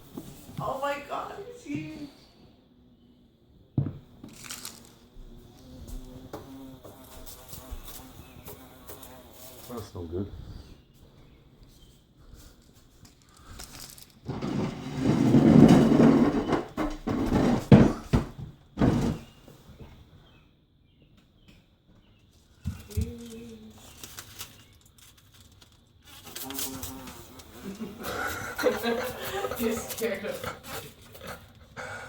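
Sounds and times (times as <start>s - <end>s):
rustling scraping handling noise: 4.2s - 5.1s, 12.5s - 19.4s, 22.3s - 27.9s
sharp knocks and thumps: 15.5s - 19.3s.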